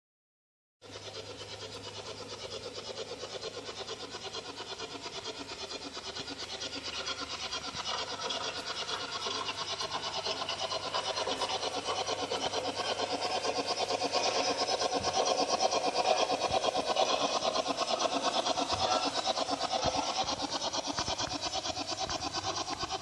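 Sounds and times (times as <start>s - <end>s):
low hum: 0.8s - 23.0s
steam locomotive chuffing: 0.8s - 23.0s.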